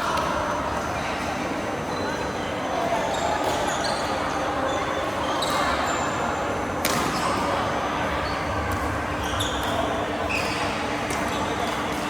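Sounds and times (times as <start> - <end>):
hall background noise: 0.0 - 12.0
shoes squeaking on court floor: 3.1 - 6.2, 9.2 - 12.0.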